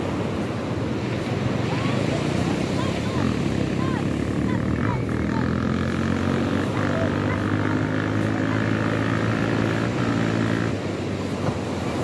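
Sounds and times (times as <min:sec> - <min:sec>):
motor engine droning: 0:02.0 - 0:12.0.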